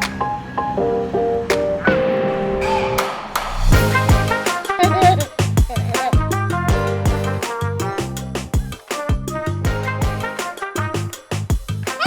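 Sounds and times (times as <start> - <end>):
music with horns and beat: 3.0 - 12.0.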